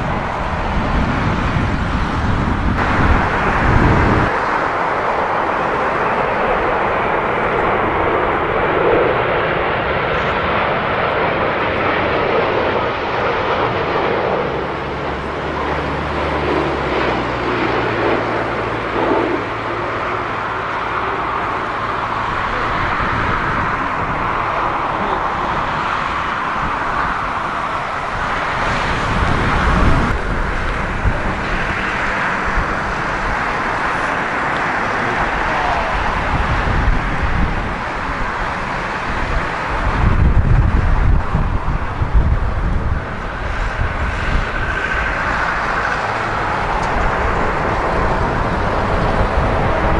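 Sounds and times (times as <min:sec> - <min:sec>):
low rumble: 0:00.0 - 0:08.2
jet engines rushing: 0:00.0 - 0:49.9.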